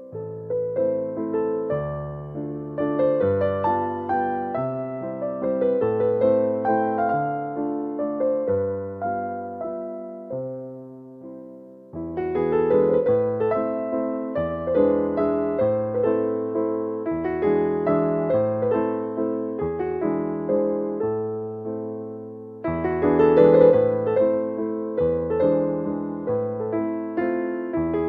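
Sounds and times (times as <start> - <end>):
piano music: 0.0 - 28.0.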